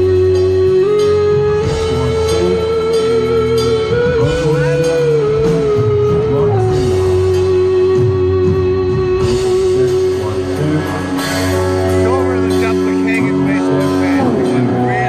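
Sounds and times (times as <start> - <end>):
bass notes: 0.0 - 15.0.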